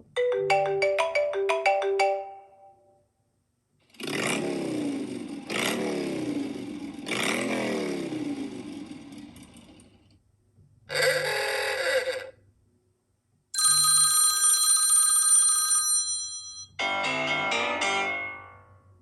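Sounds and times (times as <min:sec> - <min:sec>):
plucked chime ringtone: 0:13.6 - 0:18.8.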